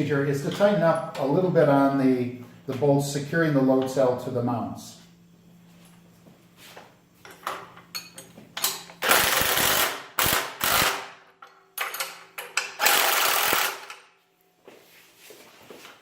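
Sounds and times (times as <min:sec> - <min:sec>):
metal clicks and clanks: 0:11.4 - 0:12.8
ratchet tool rattling: 0:11.8 - 0:14.0.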